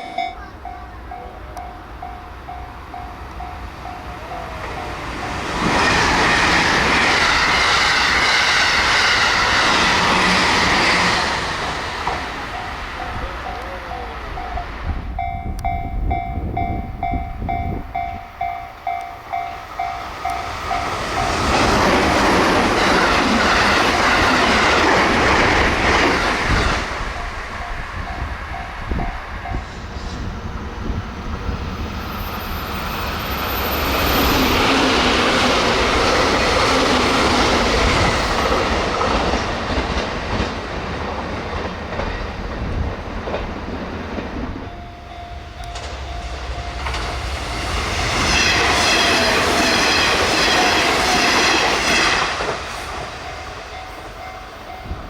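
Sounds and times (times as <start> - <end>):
level-crossing warning bell: 0.0 - 9.8, 10.7 - 40.5, 44.2 - 55.0
train passing at high speed: 0.0 - 55.0.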